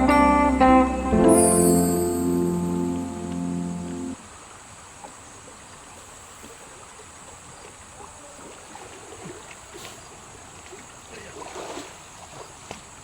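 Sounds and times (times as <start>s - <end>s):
guitar music: 0.0s - 4.2s
river water: 1.4s - 13.0s.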